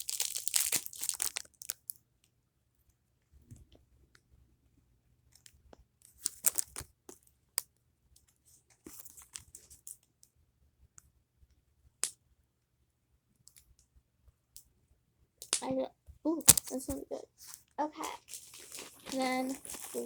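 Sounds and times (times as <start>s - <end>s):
plastic packaging crinkling and tearing: 0.0s - 1.9s, 6.2s - 6.9s, 16.4s - 20.0s.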